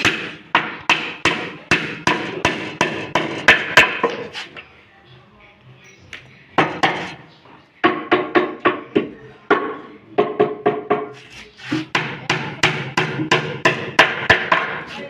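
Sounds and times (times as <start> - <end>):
hammer striking nails into wood: 0.0 - 4.2, 11.8 - 14.8.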